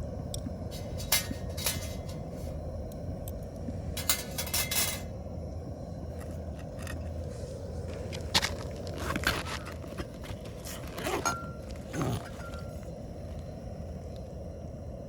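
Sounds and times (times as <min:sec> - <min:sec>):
steady low rumble: 0:00.0 - 0:15.0
camping gear clinking and scraping: 0:00.7 - 0:02.6, 0:04.0 - 0:05.1, 0:06.1 - 0:13.0.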